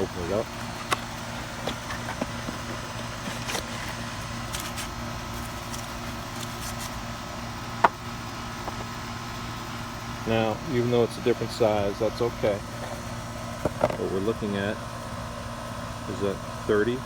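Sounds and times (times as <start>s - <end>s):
air conditioner unit humming: 0.0s - 17.0s
packaging rustling and clicking: 0.6s - 7.0s.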